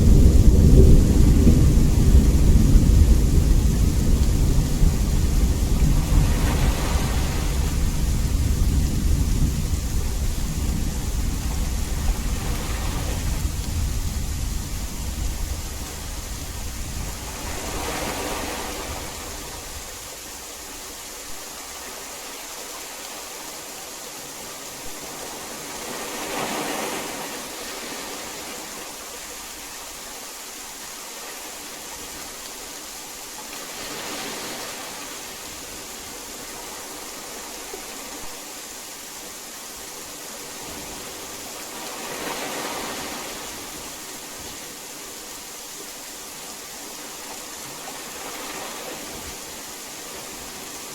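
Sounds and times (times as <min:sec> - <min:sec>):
heavy rain falling: 0:00.0 - 0:50.9.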